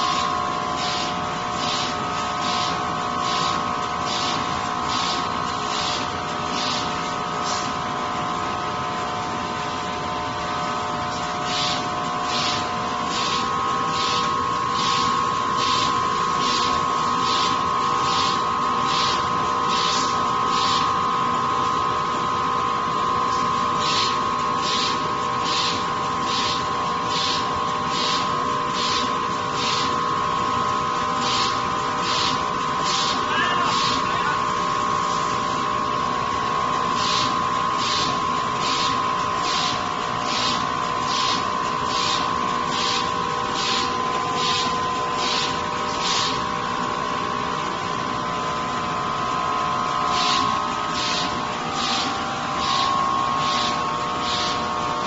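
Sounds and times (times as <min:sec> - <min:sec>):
machine whine: 0:00.0 - 0:55.0
short hissing strokes: 0:00.8 - 0:06.0, 0:11.5 - 0:20.9, 0:23.8 - 0:30.0, 0:31.2 - 0:34.3, 0:37.0 - 0:46.4, 0:50.1 - 0:54.6.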